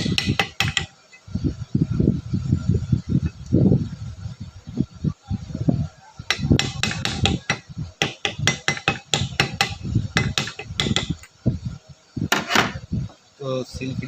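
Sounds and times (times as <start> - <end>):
hammer tapping metal: 0.0 - 1.2, 6.3 - 11.3.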